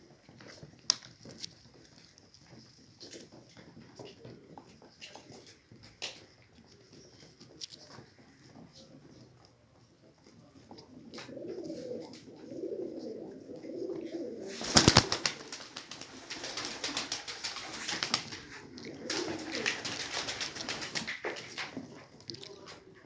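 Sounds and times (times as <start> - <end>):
pigeons cooing: 10.8 - 21.1
rapid clicking and rustling: 14.6 - 18.5, 19.1 - 22.8.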